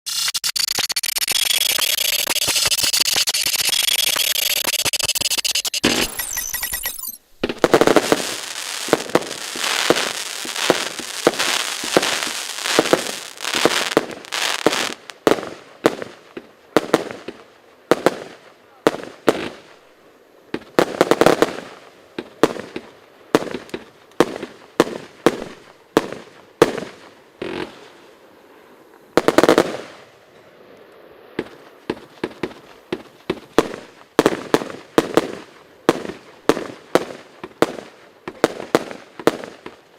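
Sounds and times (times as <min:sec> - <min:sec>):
firework crackling: 0:00.1 - 0:19.9, 0:20.5 - 0:30.3
firework sharp reports: 0:00.1 - 0:19.9.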